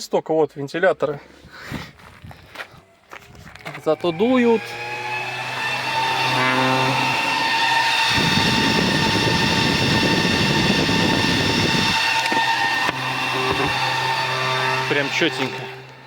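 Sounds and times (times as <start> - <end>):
cooling fans whining: 3.8 - 16.0.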